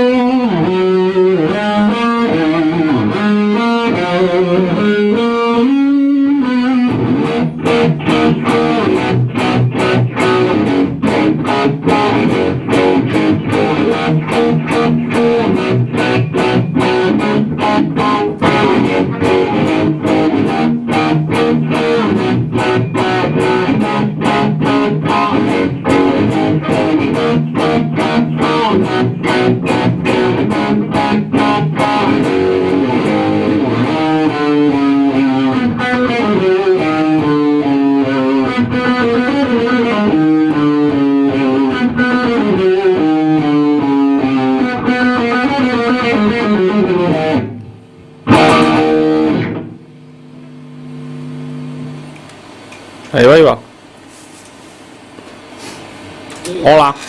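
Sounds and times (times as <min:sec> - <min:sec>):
electric guitar melody: 0:00.0 - 0:53.1
distorted guitars: 0:00.0 - 0:57.0.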